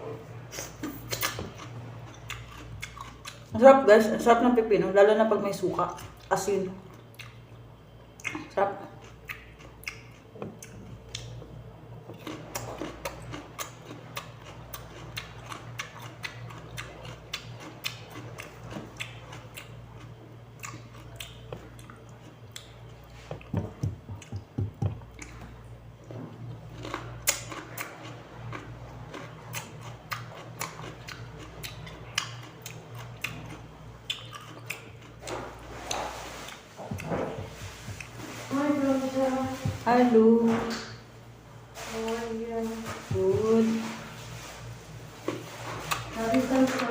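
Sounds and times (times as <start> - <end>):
steady low hum: 0.0 - 46.9
crunchy chewing of cucumber: 0.6 - 3.5, 6.9 - 38.5, 44.3 - 46.9.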